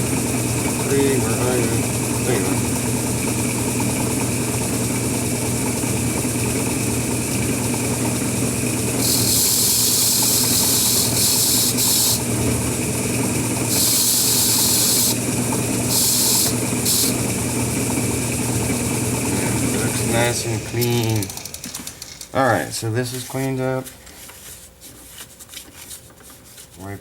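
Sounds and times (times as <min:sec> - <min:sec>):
steady mechanical hum: 0:00.0 - 0:27.0
hissing spray: 0:09.0 - 0:12.2, 0:13.7 - 0:15.2, 0:15.9 - 0:17.2.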